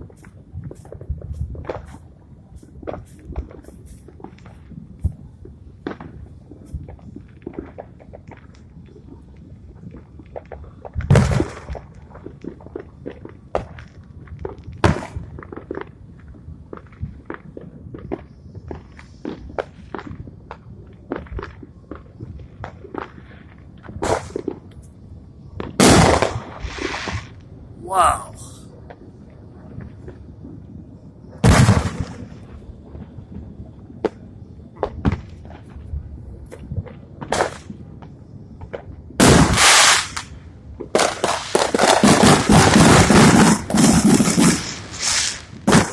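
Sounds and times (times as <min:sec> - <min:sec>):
small firework pops and clicks: 0:00.0 - 0:25.0, 0:34.0 - 0:34.2, 0:36.4 - 0:37.8, 0:38.6 - 0:45.9
firework cracks and pops: 0:37.2 - 0:37.8, 0:38.7 - 0:45.9.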